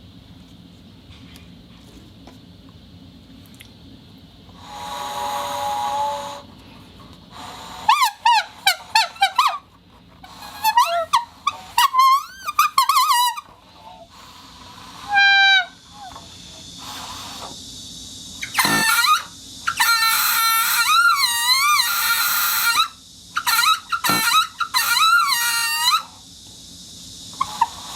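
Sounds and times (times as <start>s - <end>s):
rubber whistle squealing: 4.6s - 6.5s, 7.4s - 17.6s, 18.4s - 26.2s, 27.4s - 27.9s.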